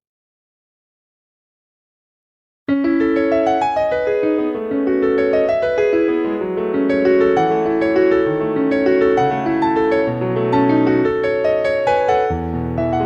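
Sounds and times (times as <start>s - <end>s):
piano melody with bass notes: 2.7s - 13.0s.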